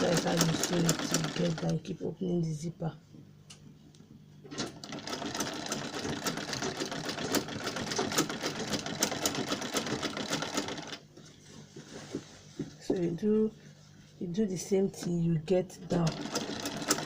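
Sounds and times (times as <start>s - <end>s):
sewing machine stitching: 0.0s - 1.8s, 4.5s - 11.0s, 16.0s - 17.0s.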